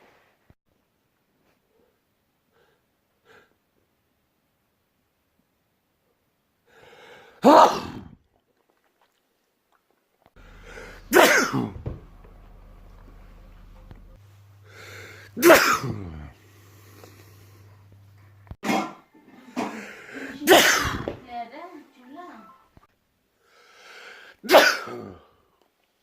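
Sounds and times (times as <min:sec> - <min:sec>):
person sneezing: 0:07.4 - 0:08.2, 0:10.5 - 0:12.0, 0:14.8 - 0:16.4, 0:19.6 - 0:21.2, 0:24.4 - 0:25.3
faint low hum: 0:10.4 - 0:18.6.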